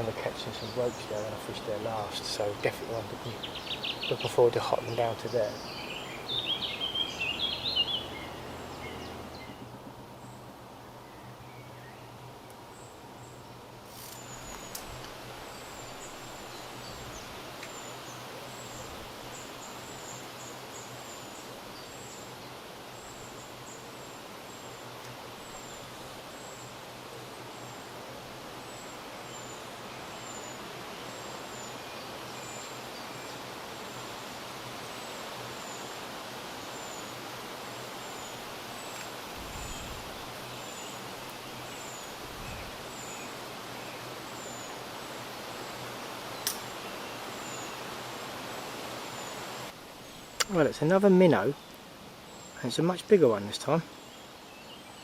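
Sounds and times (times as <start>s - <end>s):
river rushing: 0.0s - 10.8s, 13.6s - 54.5s.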